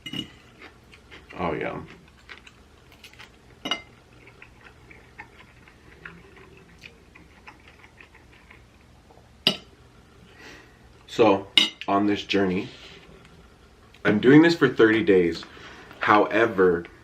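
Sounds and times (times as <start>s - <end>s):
sharp cutlery clink: 9.5s - 9.7s.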